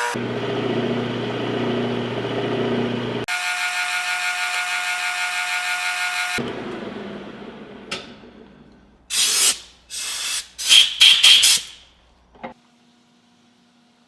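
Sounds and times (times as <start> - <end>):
lathe motor spinning down: 0.0 - 7.9
compressed air hissing blasts: 9.1 - 11.8.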